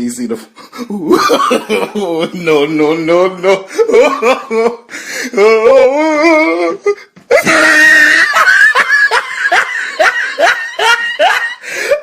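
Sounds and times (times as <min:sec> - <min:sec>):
exaggerated laughter: 0:00.8 - 0:02.6, 0:05.8 - 0:12.0.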